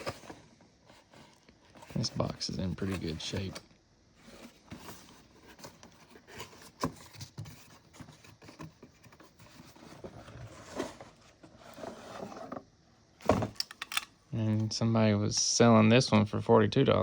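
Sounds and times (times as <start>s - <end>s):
cardboard box rustling and scraping: 0.0s - 3.6s, 4.2s - 13.6s.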